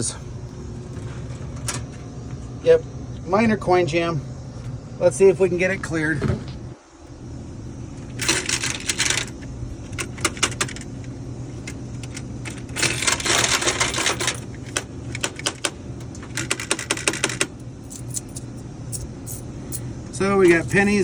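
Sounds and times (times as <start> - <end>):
steady low hum: 0.0 - 21.0
coin mechanism clicking and rattling: 8.2 - 10.9, 11.6 - 19.8.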